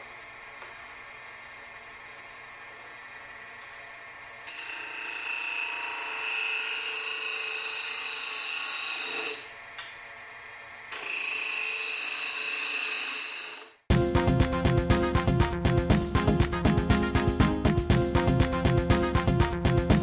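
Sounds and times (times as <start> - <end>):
small motor tool whining: 2.4 - 13.8.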